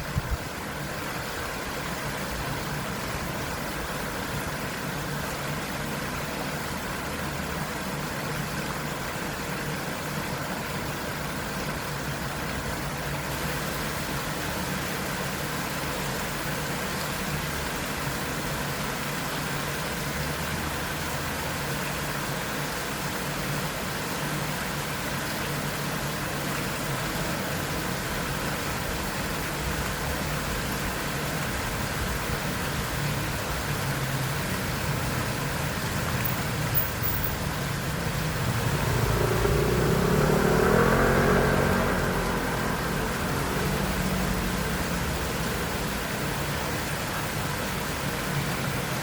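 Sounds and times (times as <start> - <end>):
faint engine hum: 0.0 - 49.0
small waterfall rushing: 0.0 - 49.0
motorcycle passing: 33.9 - 45.8.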